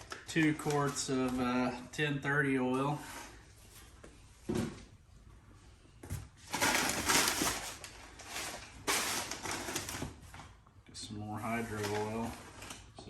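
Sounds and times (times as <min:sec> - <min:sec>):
paper rustling and crinkling: 0:00.0 - 0:01.8, 0:06.4 - 0:10.6, 0:11.4 - 0:13.0.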